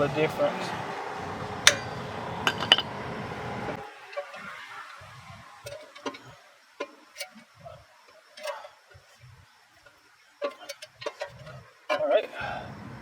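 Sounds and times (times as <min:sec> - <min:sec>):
tools clicking and tapping: 0:05.6 - 0:12.1.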